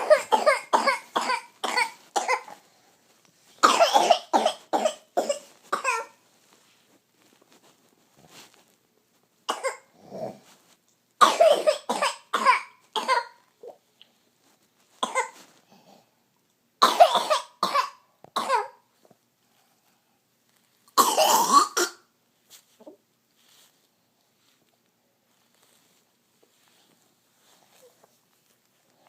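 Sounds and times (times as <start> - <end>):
person coughing hoarsely: 0.0 - 2.6, 3.6 - 6.1, 16.8 - 18.8, 21.0 - 22.0.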